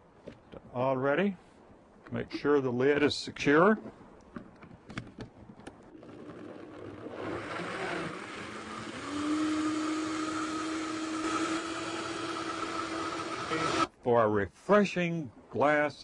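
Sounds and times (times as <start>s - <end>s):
blender motor whine: 6.0s - 13.9s.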